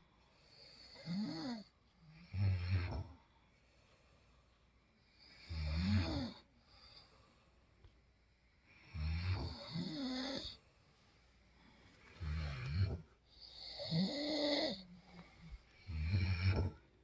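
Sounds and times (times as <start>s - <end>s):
person snoring: 0.5s - 3.2s, 5.2s - 6.5s, 8.8s - 10.6s, 12.2s - 16.9s.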